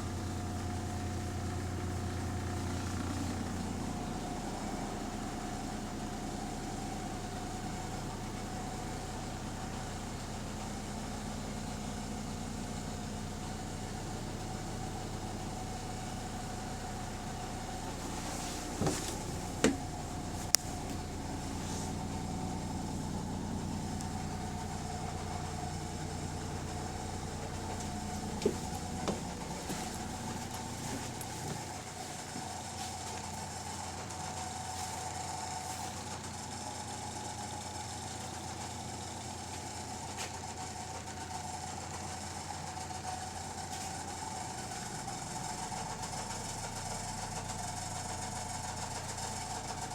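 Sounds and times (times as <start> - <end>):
bus diesel engine running: 0.0 - 49.9
engine whine: 16.9 - 34.0.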